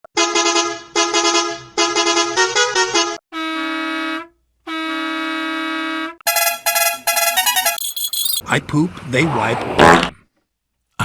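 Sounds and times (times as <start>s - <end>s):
bus horn blasts: 0.2s - 7.9s.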